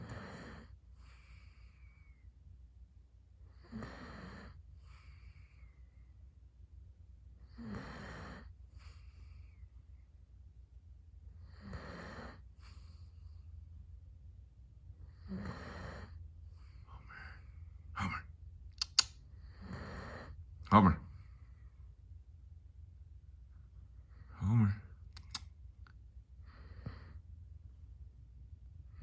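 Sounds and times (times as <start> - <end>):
dog snoring: 0.0 - 2.2, 3.4 - 5.7, 7.4 - 9.6, 11.4 - 13.4, 15.0 - 17.5, 19.4 - 20.4, 26.4 - 27.2.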